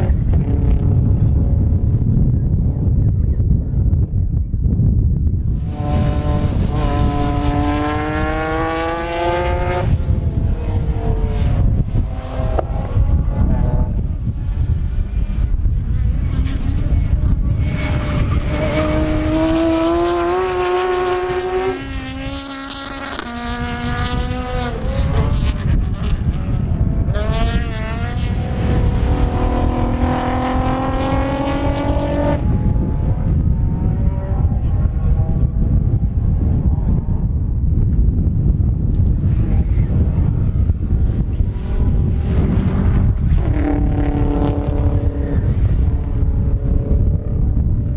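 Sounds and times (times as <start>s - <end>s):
wind buffeting microphone: 0.0s - 47.9s
race car engine accelerating: 5.6s - 14.0s, 16.2s - 37.2s, 39.3s - 47.4s.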